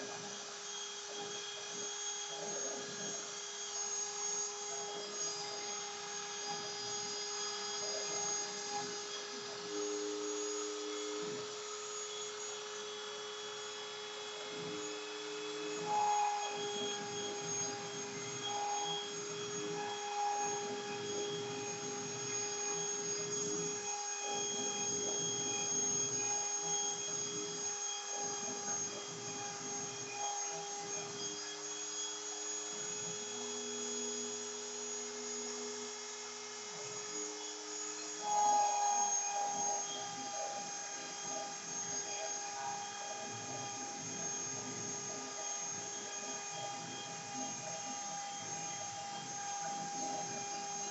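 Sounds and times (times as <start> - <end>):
router bit cutting: 0.0 - 50.9
router spindle whining: 0.0 - 50.9.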